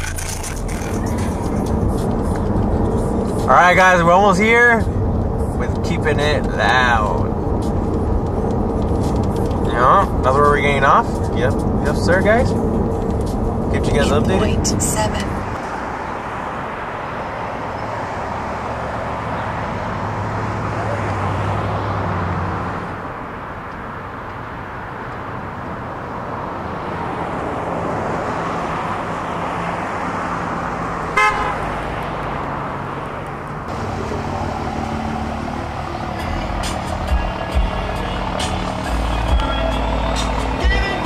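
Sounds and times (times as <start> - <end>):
car road and engine noise: 0.0 - 41.0
car horn beep: 31.2 - 31.8.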